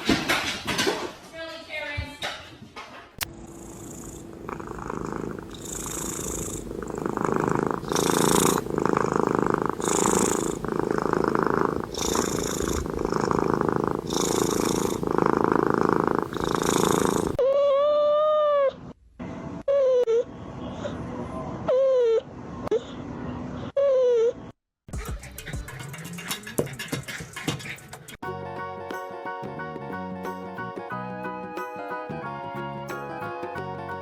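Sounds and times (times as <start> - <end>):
cat purring loudly: 3.4 - 17.4.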